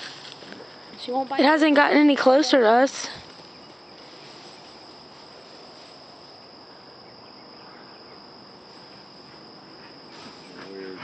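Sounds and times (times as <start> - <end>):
insects trilling: 0.0 - 11.0.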